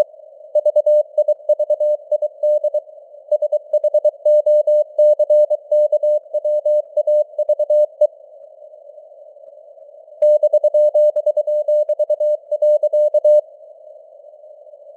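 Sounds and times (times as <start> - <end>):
morse code beeps: 0.6 - 8.1, 10.2 - 13.4.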